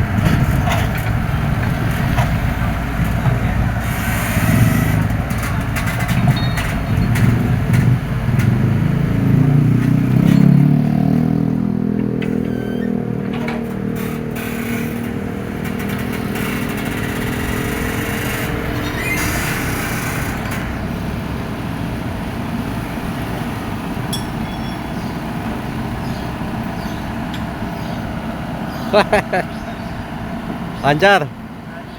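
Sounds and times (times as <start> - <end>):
excavator diesel engine working: 0.0 - 31.9
short metal clanks: 12.0 - 20.8, 24.1 - 25.3.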